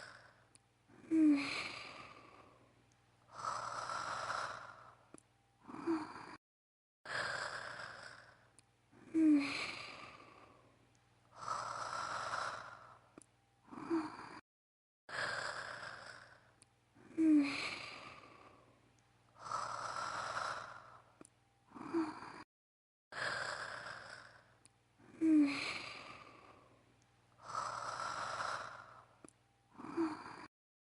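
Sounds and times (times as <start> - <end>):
woman snoring: 0.0 - 2.7, 3.3 - 6.4, 7.1 - 10.7, 11.3 - 14.4, 15.1 - 18.6, 19.4 - 22.5, 23.1 - 26.8, 27.4 - 30.5
squeaky snorts and sighs: 5.6 - 6.4, 13.7 - 14.4, 19.4 - 22.5, 27.4 - 30.5.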